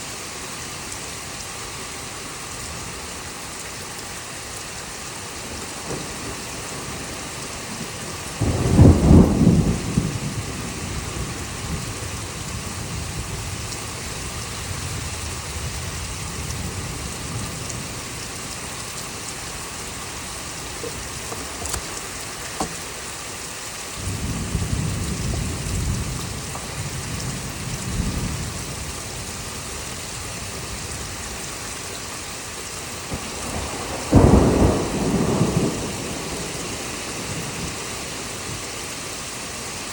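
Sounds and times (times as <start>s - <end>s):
steady rain: 0.0s - 39.9s
thunder rumbling: 4.6s - 39.9s.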